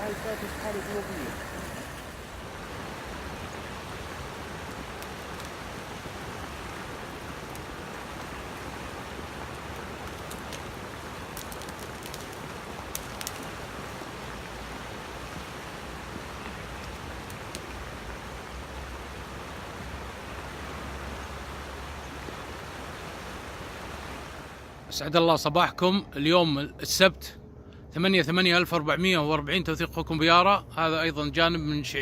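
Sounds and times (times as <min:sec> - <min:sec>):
floodwater rushing: 0:00.0 - 0:24.9.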